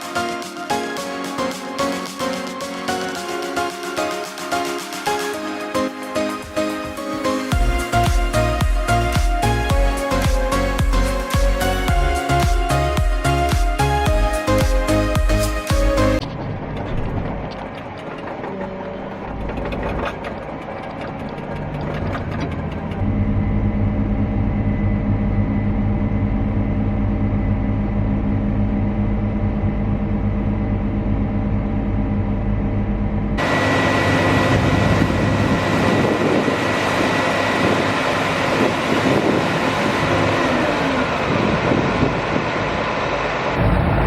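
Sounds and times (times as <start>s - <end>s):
heavy machinery engine running: 0.0s - 44.0s
rough machine rattling: 16.2s - 23.0s.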